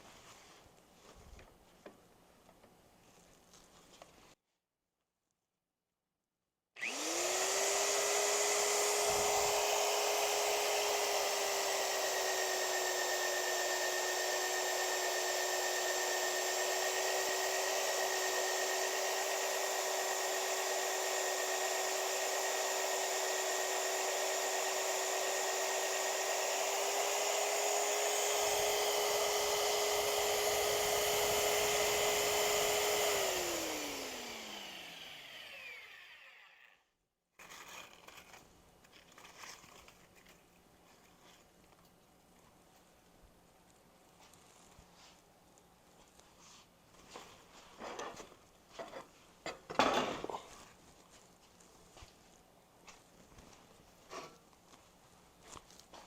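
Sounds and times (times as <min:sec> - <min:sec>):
power tool motor whining: 0:06.8 - 0:36.8.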